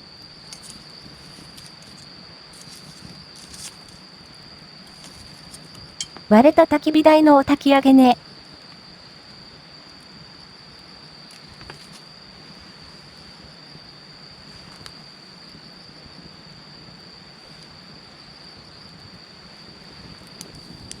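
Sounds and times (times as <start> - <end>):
crickets trilling: 0.2 - 6.1.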